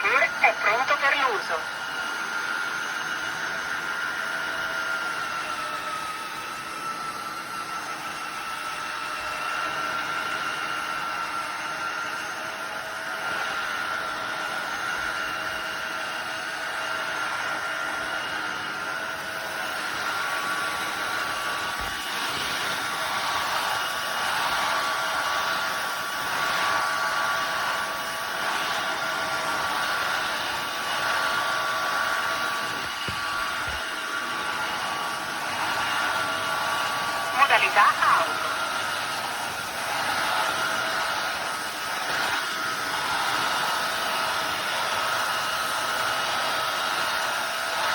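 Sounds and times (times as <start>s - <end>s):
floor cleaner motor whining: 0.0s - 47.9s.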